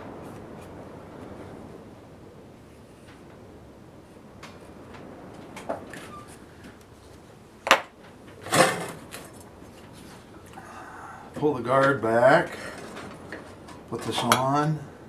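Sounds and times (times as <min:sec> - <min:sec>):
scraping rattle: 0:08.2 - 0:10.3.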